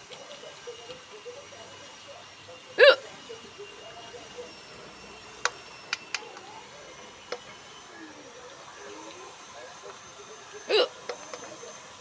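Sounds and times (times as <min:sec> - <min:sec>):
short sharp clicks: 0:06.0 - 0:06.4.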